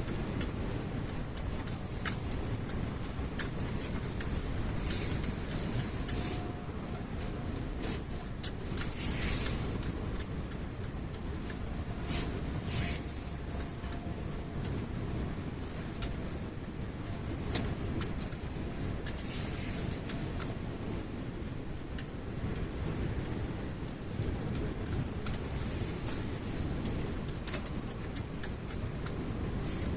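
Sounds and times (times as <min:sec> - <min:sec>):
wind rumbling on microphone: 0:00.0 - 0:29.9.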